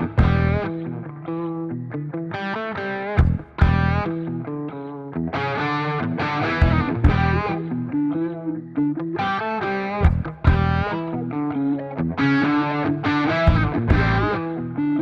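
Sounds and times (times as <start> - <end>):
drum hits: 0.0 - 0.6, 3.2 - 4.0, 6.6 - 7.5, 10.0 - 10.9, 13.5 - 14.3
bass line: 0.0 - 1.0, 3.2 - 4.2, 6.5 - 7.8, 10.0 - 11.0, 13.2 - 14.5
distorted electric guitar music: 0.0 - 15.0.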